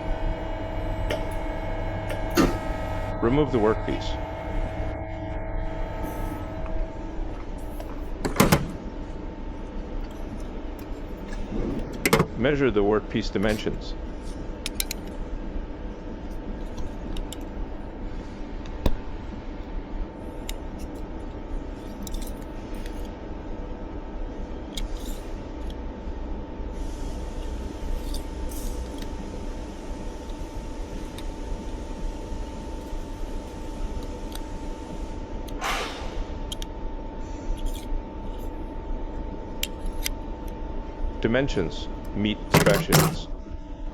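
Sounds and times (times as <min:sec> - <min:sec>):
machine shop hum: 0:00.0 - 0:43.9
metal part clicking: 0:42.5 - 0:43.3.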